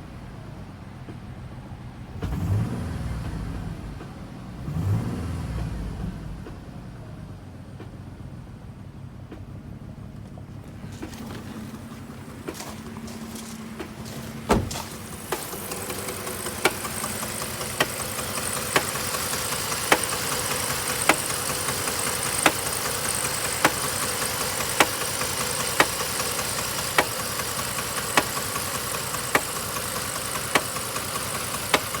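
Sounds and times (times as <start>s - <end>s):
car engine running: 0.0s - 32.0s
engine knocking: 10.6s - 32.0s
loud thump: 14.4s - 15.5s.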